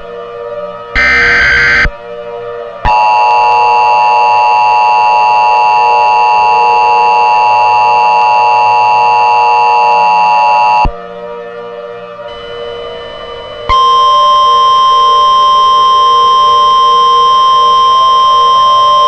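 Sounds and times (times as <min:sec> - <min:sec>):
quiet ambient music: 0:00.0 - 0:19.0
two-tone alarm: 0:00.8 - 0:19.0.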